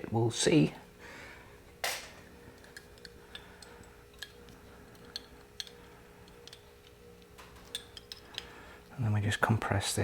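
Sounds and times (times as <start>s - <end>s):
small metal parts clicking: 2.6s - 8.6s.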